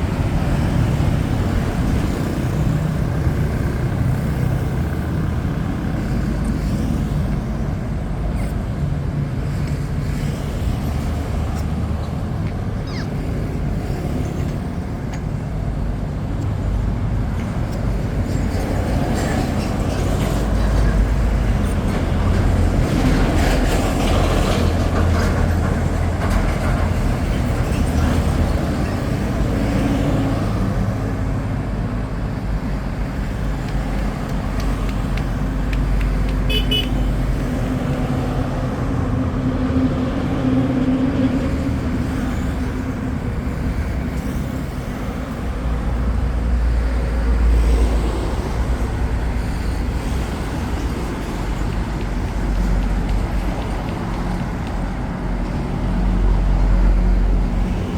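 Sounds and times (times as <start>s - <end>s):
road traffic engines rumbling: 0.0s - 57.9s.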